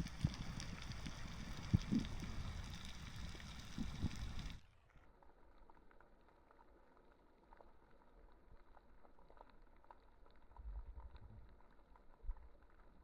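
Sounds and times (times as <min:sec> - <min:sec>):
small crackling clicks underwater: 0:00.0 - 0:13.0
low rumble: 0:10.5 - 0:11.6.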